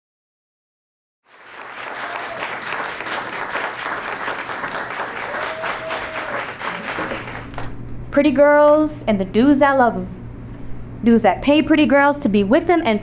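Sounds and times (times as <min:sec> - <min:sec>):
audience applauding: 0:01.3 - 0:07.7.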